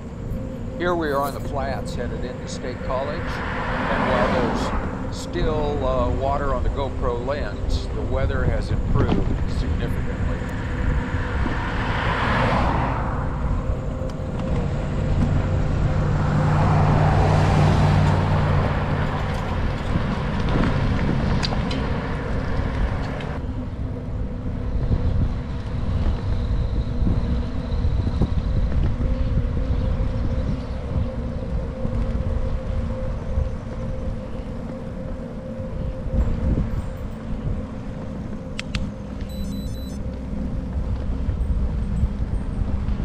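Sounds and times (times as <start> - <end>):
cars passing with tyre hiss: 0.0 - 6.6, 9.8 - 28.4
engine hum: 0.0 - 43.0
low road rumble: 0.0 - 43.0.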